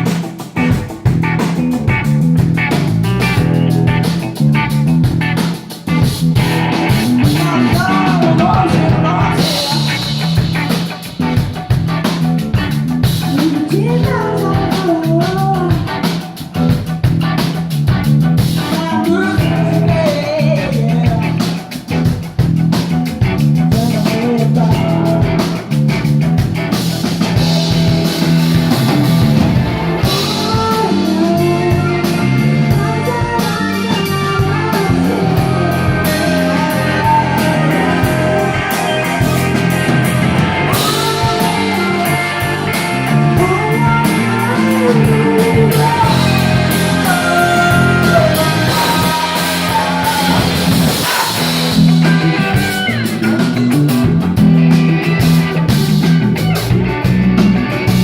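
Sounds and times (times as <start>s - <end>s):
bass guitar: 0.0s - 58.0s
drum kit: 0.0s - 58.0s
electric guitar: 0.0s - 58.0s
person singing: 6.8s - 11.0s, 13.2s - 16.4s, 18.6s - 21.6s, 23.7s - 25.8s, 30.0s - 53.8s.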